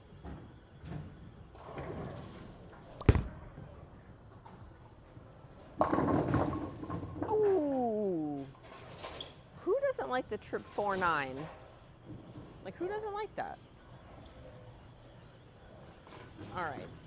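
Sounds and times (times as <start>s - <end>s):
bowling ball crashing into pins: 3.0s - 3.8s
sharp thud: 3.0s - 3.8s.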